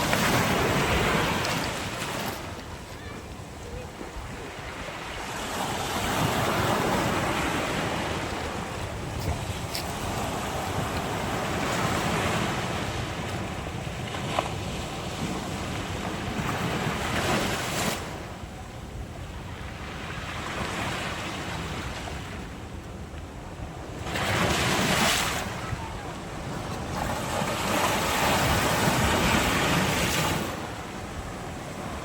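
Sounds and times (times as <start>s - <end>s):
wind buffeting microphone: 0.0s - 17.4s
sea waves breaking on shore: 0.0s - 18.6s, 23.6s - 32.0s.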